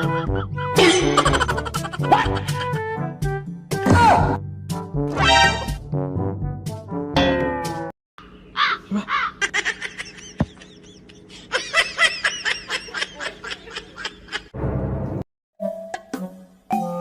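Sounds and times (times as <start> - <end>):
high-pitched giggling: 0.0 - 2.8, 8.7 - 14.5.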